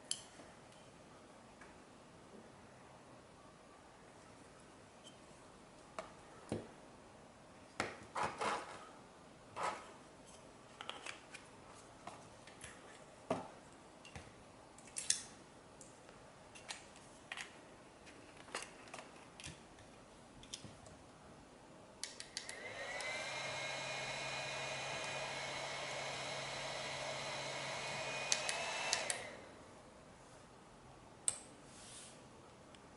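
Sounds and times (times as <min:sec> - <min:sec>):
handheld fan motor whine: 0:22.4 - 0:29.6.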